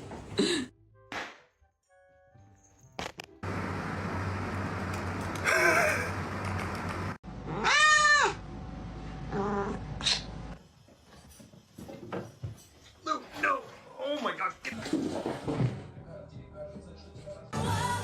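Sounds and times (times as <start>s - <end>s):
cat meowing: 7.5s - 8.4s.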